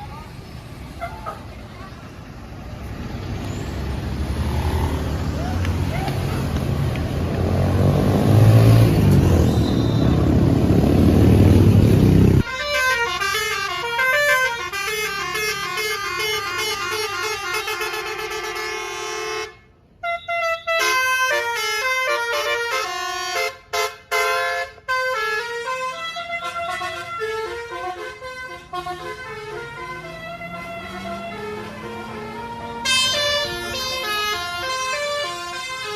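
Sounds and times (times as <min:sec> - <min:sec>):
musical horn melody: 0:12.4 - 0:35.9.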